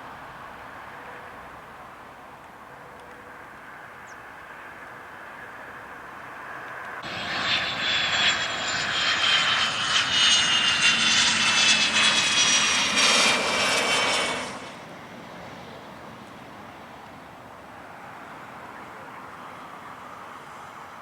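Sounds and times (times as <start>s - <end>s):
jet aircraft passing: 4.4s - 17.0s.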